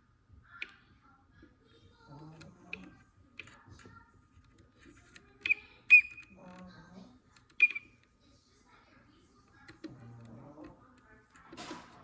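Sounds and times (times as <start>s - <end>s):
plastic toy clicking: 7.3s - 8.1s, 9.5s - 11.9s
low voice murmuring: 9.8s - 10.9s.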